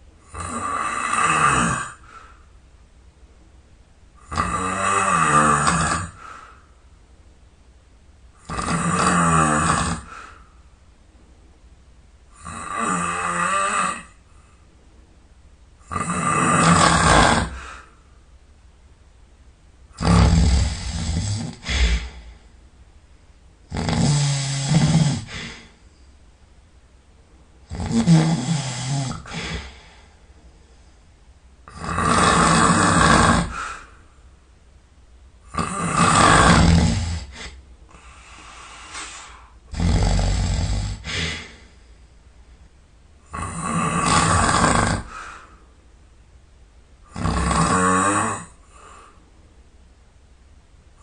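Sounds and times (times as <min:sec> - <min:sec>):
man snoring: 0:00.2 - 0:02.2, 0:04.2 - 0:06.4, 0:08.4 - 0:10.4, 0:12.4 - 0:14.2, 0:15.8 - 0:17.9, 0:20.0 - 0:22.4, 0:23.7 - 0:25.8, 0:27.7 - 0:30.0, 0:31.7 - 0:33.9, 0:35.5 - 0:41.7, 0:43.3 - 0:45.5, 0:47.0 - 0:49.2.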